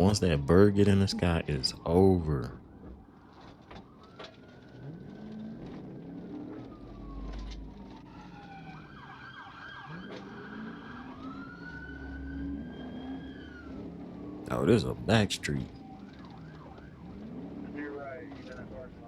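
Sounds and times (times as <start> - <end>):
police siren wailing and yelping: 0.0 - 19.0
car engine revving: 4.5 - 8.3, 9.8 - 19.0.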